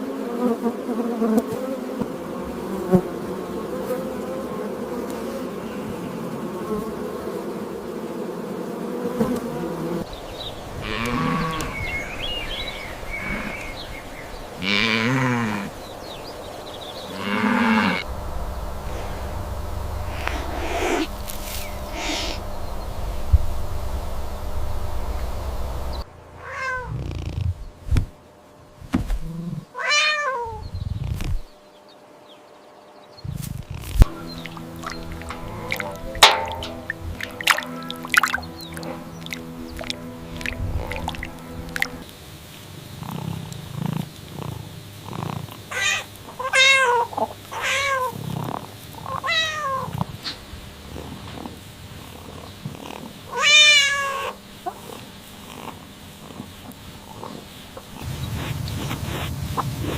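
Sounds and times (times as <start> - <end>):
low thumps: 18.0 - 26.0, 33.9 - 42.0
low rumble: 18.0 - 27.9, 33.3 - 42.0
soft low sounds: 18.0 - 28.2, 33.3 - 42.1
cat meowing: 26.4 - 27.0, 29.8 - 30.6, 45.7 - 48.1, 49.2 - 49.9, 53.3 - 54.4.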